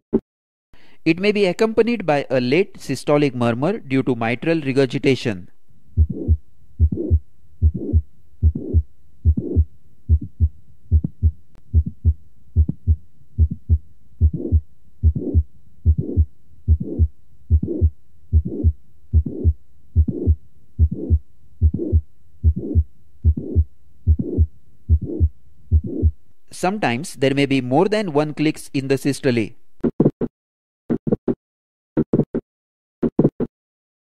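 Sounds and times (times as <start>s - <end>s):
heart murmur: 6.0s - 26.2s
heartbeat through stethoscope: 6.0s - 26.2s.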